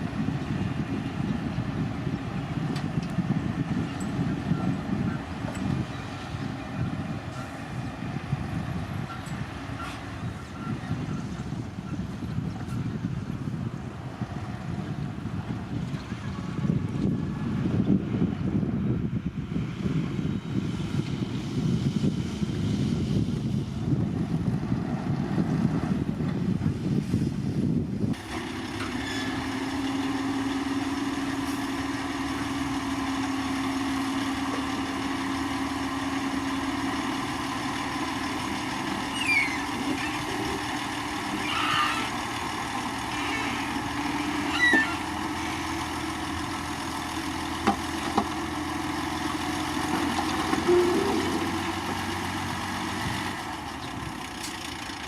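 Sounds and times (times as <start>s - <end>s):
diesel machinery rumbling: 0.0s - 55.0s
high squeaks: 39.1s - 40.5s, 44.3s - 45.1s, 50.6s - 51.6s.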